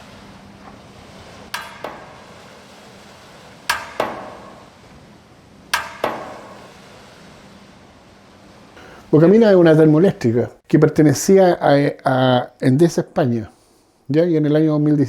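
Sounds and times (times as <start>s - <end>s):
sharp ringing knocks: 1.5s - 2.7s, 3.7s - 4.8s, 5.7s - 6.8s.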